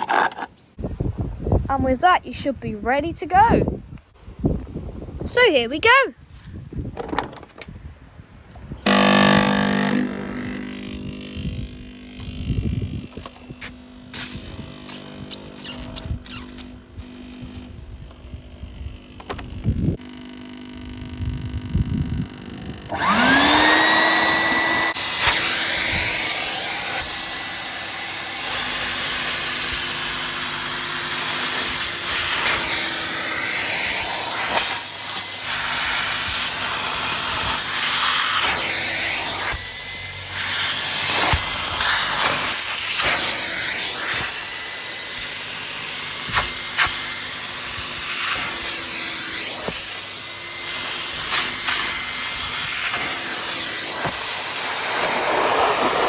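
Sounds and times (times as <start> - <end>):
wet vacuum running: 8.9 - 56.0
suction hiss: 14.1 - 17.7, 28.4 - 56.0.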